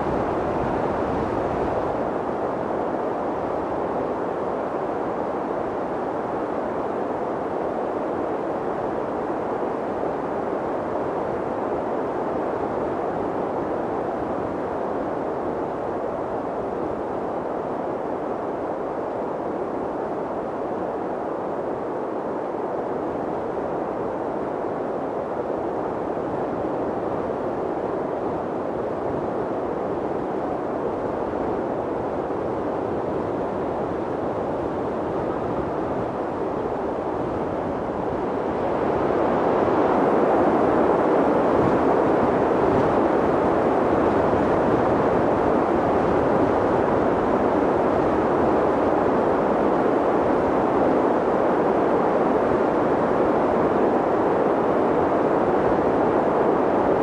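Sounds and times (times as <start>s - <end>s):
wind blowing: 18.8s - 57.0s.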